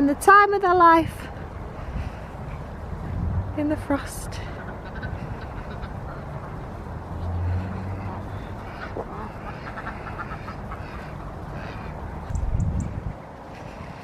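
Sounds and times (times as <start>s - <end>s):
low rumbles: 0.9s - 14.0s
ducks quacking: 4.5s - 12.3s.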